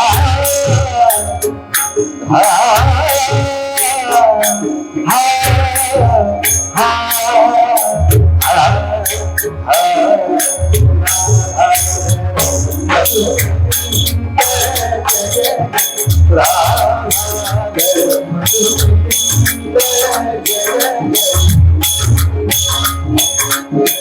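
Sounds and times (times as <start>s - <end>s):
low drum beat: 0.0s - 1.4s, 2.5s - 4.4s, 8.0s - 9.8s, 10.6s - 20.4s
person singing: 0.0s - 21.6s
jingling hand percussion: 0.0s - 24.0s.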